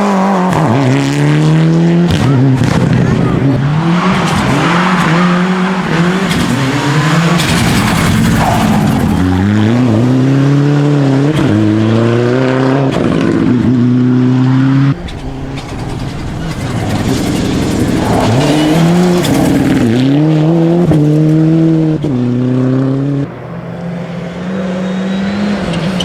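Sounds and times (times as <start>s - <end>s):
rally car engine at full throttle: 0.0s - 26.0s
rushing noise: 3.6s - 10.6s, 14.9s - 20.8s.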